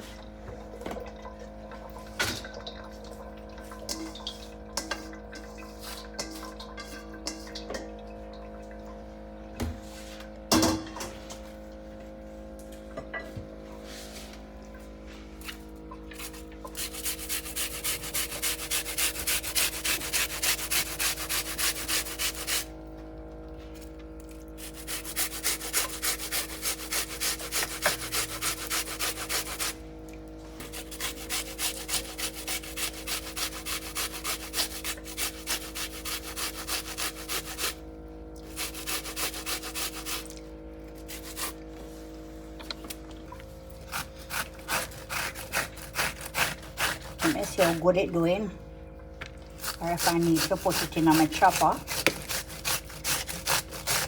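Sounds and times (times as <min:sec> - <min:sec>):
food scraping on a grater: 0:16.2 - 0:22.7, 0:24.6 - 0:29.8, 0:30.6 - 0:37.8, 0:38.4 - 0:40.4, 0:41.0 - 0:41.6, 0:43.9 - 0:47.9, 0:49.6 - 0:54.0.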